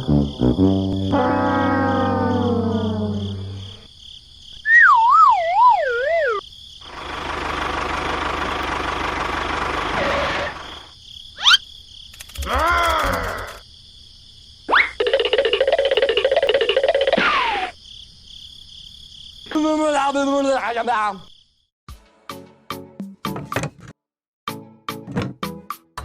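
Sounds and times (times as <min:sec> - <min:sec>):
falling brass wah-wah: 0:00.0 - 0:03.8
springy boing: 0:01.0 - 0:03.0
quick rising whistle: 0:04.6 - 0:06.4
warbling downward whistle: 0:04.7 - 0:06.4.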